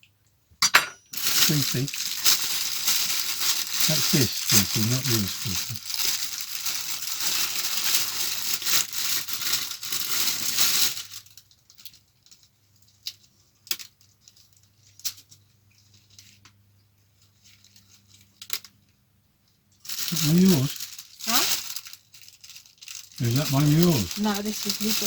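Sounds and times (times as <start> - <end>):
utensils and crockery clicking: 0.6 - 1.6
packaging crinkling rustle: 1.2 - 18.8, 19.8 - 25.0.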